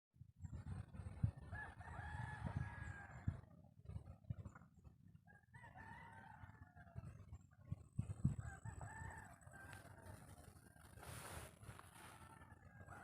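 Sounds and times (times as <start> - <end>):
rooster crowing: 8.4 - 13.0.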